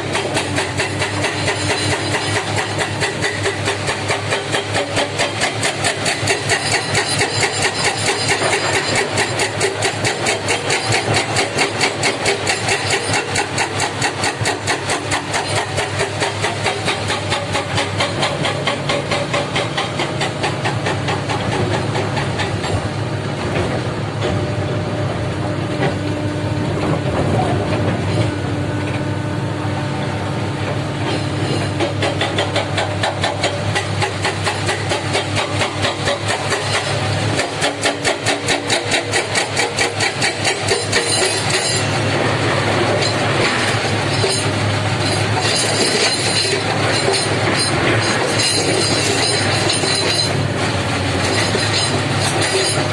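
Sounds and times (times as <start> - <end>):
excavator diesel engine under load: 0.0 - 52.9
fast metallic clatter: 42.9 - 50.4.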